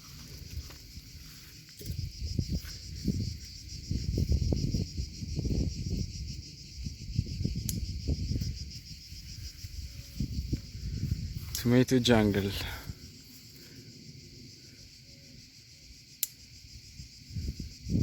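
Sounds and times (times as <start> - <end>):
low rumble on the microphone: 0.0 - 11.6
insects chirping: 0.0 - 18.0.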